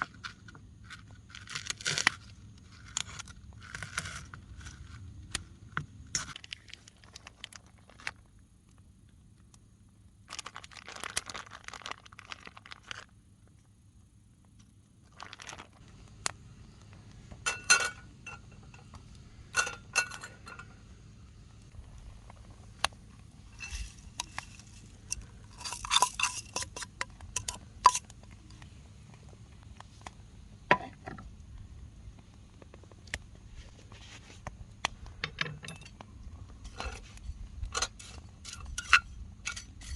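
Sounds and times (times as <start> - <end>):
utensil clinking on bowl: 25.1 - 28.1.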